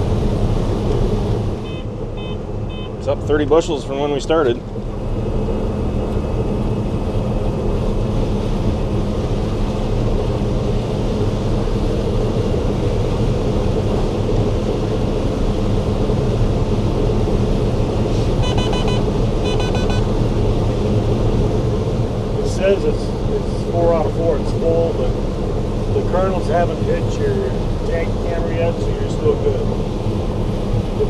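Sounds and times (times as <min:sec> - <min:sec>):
combine harvester drone: 0:00.0 - 0:31.0
electronic beeps: 0:18.4 - 0:20.1.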